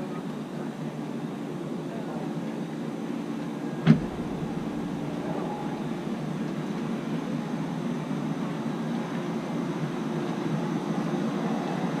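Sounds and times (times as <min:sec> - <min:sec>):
wind rumbling on microphone: 0:03.6 - 0:10.4
sharp knock: 0:03.9 - 0:07.5.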